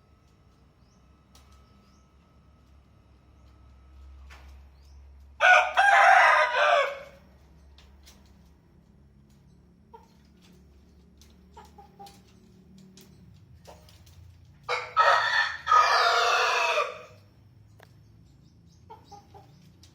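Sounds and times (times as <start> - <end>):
rooster crowing: 5.4 - 7.2, 14.7 - 17.2.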